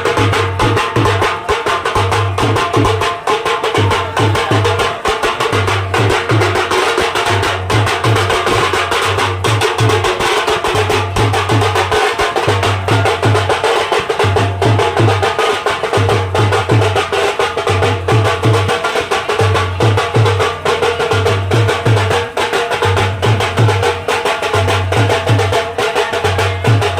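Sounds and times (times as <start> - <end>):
bass drum pattern: 0.0 - 13.6
sharp percussion strokes: 0.0 - 26.9.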